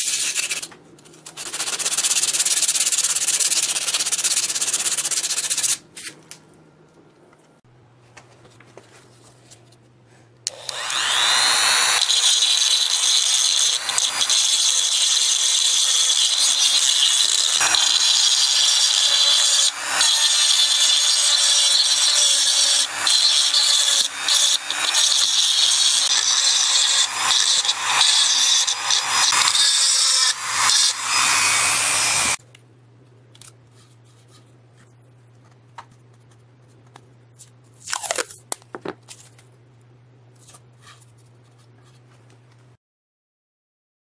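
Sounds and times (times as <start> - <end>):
power tool grinding: 10.5 - 32.4.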